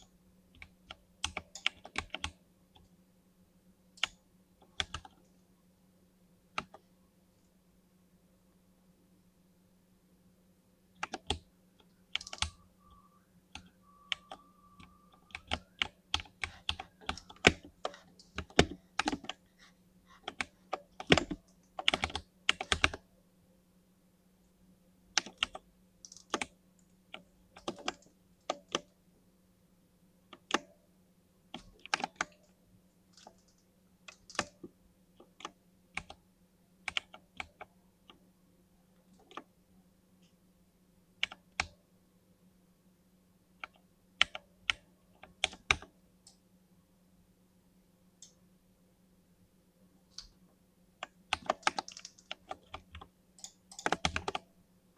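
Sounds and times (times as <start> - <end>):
mechanical keyboard typing: 0.0 - 2.9, 4.0 - 5.3, 6.6 - 6.8, 11.0 - 11.5, 12.2 - 12.6, 13.5 - 19.4, 20.2 - 23.0, 25.2 - 29.0, 31.5 - 36.2, 36.9 - 38.2, 41.2 - 41.8, 43.6 - 46.4, 51.0 - 54.5
faint steady hum: 0.0 - 54.9.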